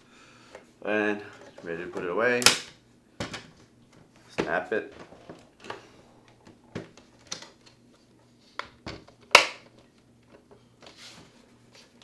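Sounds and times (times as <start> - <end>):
hard plastic case clicks and snaps: 9.3 - 9.7.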